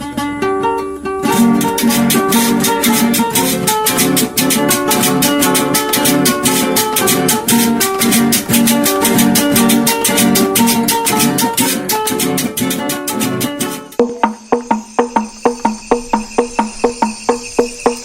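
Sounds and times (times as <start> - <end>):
strummed strings: 0.0 - 18.0
maraca shakes: 1.2 - 18.0.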